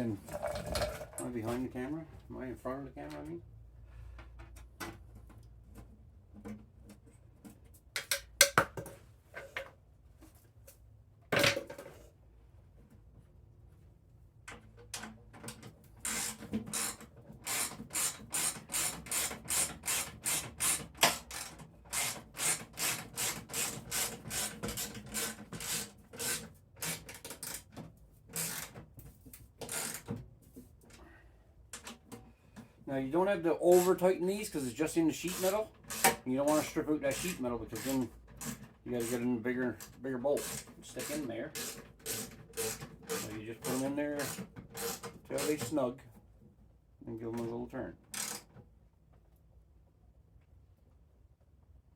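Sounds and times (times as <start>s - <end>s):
hand tool driving bolts: 14.9s - 28.8s, 29.6s - 30.2s, 35.2s - 45.8s, 48.1s - 48.6s.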